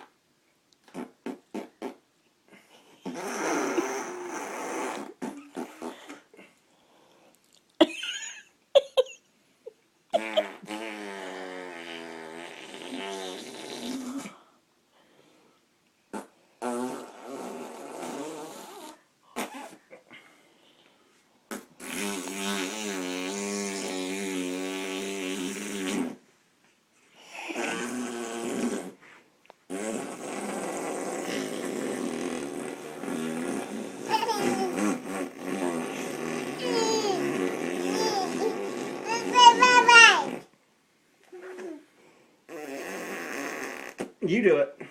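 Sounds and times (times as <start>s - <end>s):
lip raspberries buzzing: 29.7s - 40.5s.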